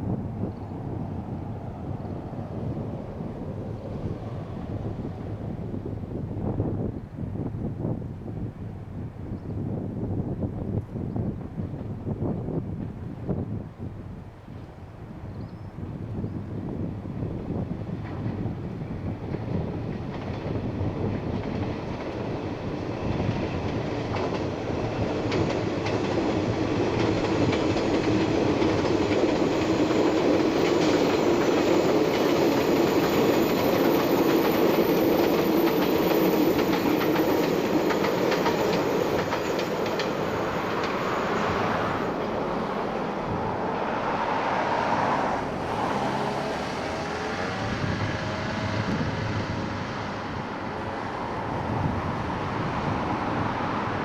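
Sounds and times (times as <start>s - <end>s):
electric train running past: 0.0s - 6.7s, 16.6s - 54.0s
wheels clattering over rail joints: 21.2s - 43.9s.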